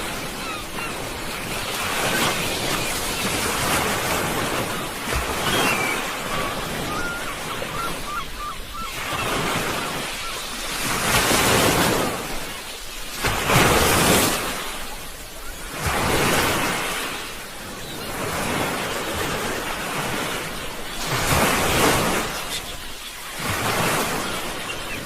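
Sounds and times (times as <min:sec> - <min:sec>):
sea waves breaking on shore: 0:00.0 - 0:25.0.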